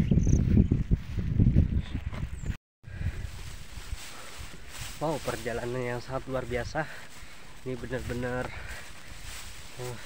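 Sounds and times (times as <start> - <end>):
wind buffeting microphone: 0.0 - 5.3.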